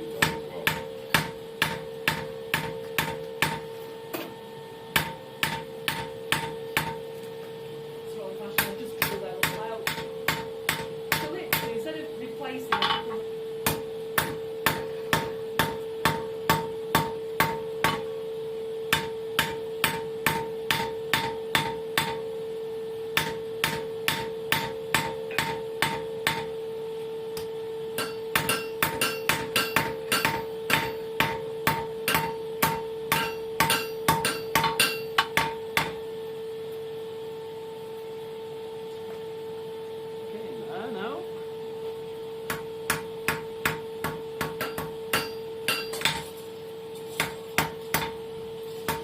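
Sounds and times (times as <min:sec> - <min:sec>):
steady hum: 0:00.0 - 0:49.0
hammer ringing on anvil: 0:00.2 - 0:03.7, 0:05.0 - 0:07.0, 0:28.0 - 0:35.9, 0:43.6 - 0:46.2.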